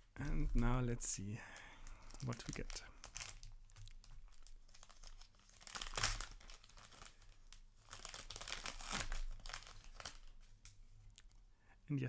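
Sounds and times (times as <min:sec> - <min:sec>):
wrapper tearing and crinkling: 0:01.8 - 0:11.3.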